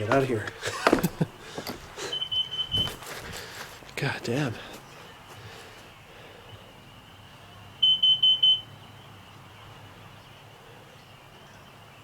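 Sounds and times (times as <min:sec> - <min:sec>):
alarm high-pitched beeps: 0:02.1 - 0:03.0, 0:07.8 - 0:08.7.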